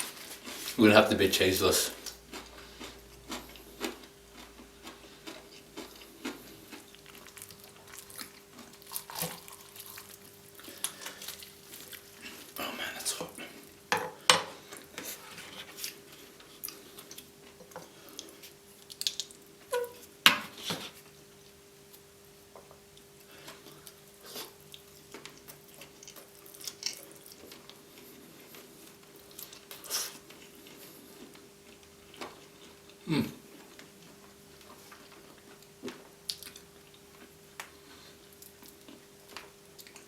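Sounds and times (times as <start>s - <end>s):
faint steady hum: 0.0s - 40.0s
chewing and biting: 2.0s - 12.6s, 15.7s - 19.4s, 23.4s - 40.0s.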